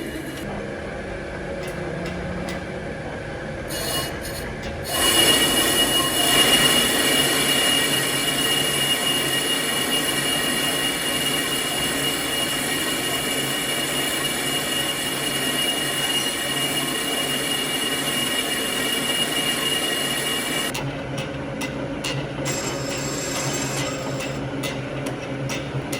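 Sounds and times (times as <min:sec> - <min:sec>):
lathe cutting tool squealing: 0:03.7 - 0:20.7, 0:22.4 - 0:24.4
metal lathe grinding: 0:03.7 - 0:20.8, 0:22.4 - 0:24.4.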